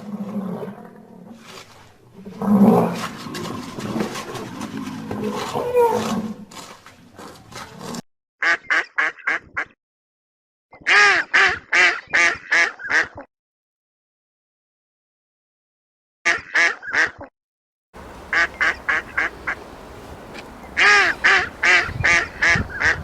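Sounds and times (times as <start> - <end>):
short animal calls: 18.0 - 23.0.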